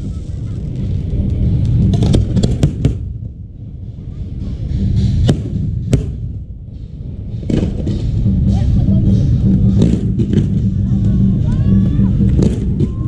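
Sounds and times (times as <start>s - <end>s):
fireworks crackling: 0.0s - 6.3s
low rumble of distant bursts: 0.0s - 13.0s
fireworks bangs: 0.3s - 3.4s.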